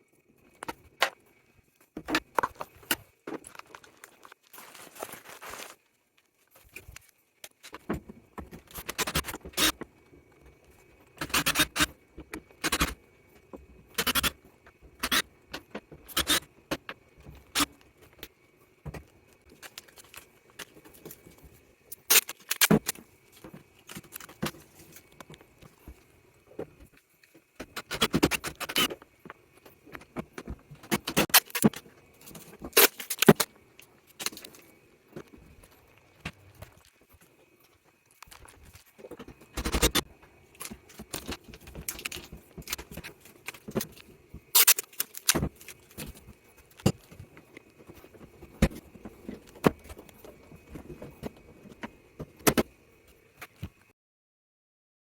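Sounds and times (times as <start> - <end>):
tools and screws clattering: 19.5 - 25.4, 29.6 - 33.5, 38.2 - 52.6.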